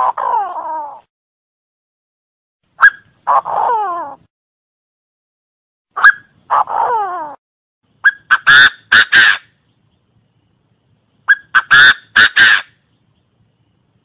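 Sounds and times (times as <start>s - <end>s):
bird calling harsh phrases: 2.8s - 4.3s, 6.0s - 7.4s, 8.0s - 9.6s, 11.3s - 12.9s.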